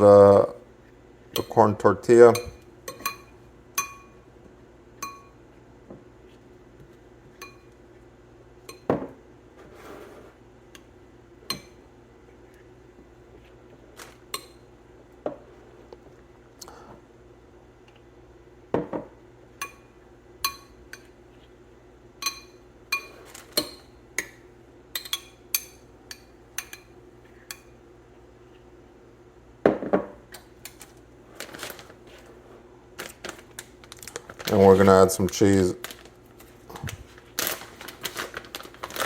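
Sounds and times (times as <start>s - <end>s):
spoon clinking against bowl: 2.3s - 4.2s, 5.0s - 5.4s, 22.2s - 24.3s.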